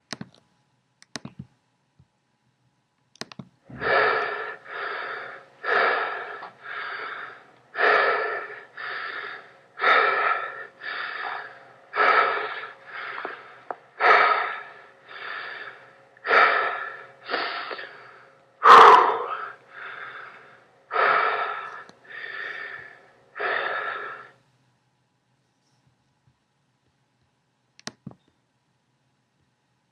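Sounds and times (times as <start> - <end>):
man breathing heavily: 3.7 - 24.4
man gasping: 3.7 - 24.4.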